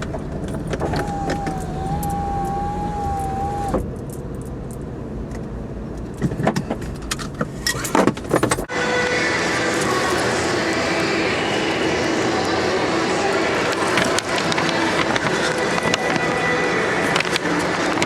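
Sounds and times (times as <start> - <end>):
car interior noise: 0.0 - 7.4.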